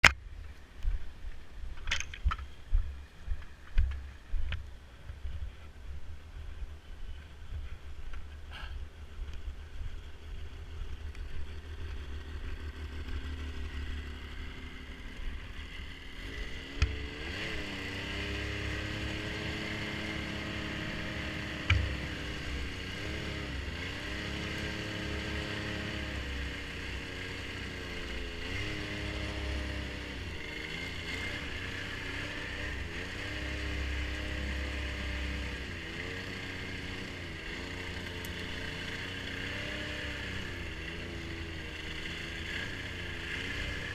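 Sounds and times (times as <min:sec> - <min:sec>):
heavy low rumble: 0:00.0 - 0:16.0
snowmobile engine revving: 0:10.5 - 0:43.9.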